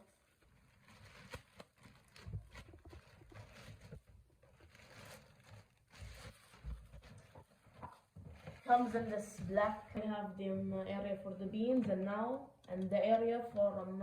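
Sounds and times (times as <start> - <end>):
packaging rustling: 0.0 - 10.0.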